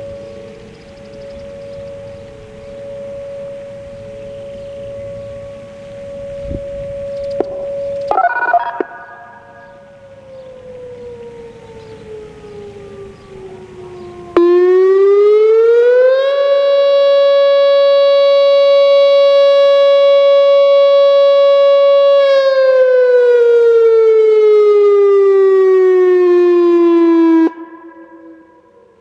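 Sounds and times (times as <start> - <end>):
electronic warning siren tone: 0.0 - 13.6, 24.2 - 29.0.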